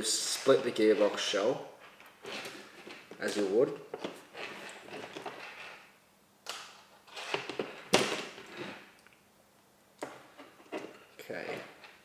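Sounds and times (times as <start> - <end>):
plastic parts scraping rustle: 0.1 - 5.9, 7.0 - 8.9.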